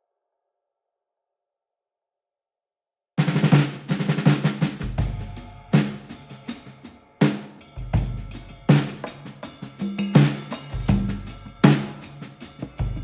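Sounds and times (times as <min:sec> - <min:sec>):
music with drum beat: 0:03.2 - 0:13.0.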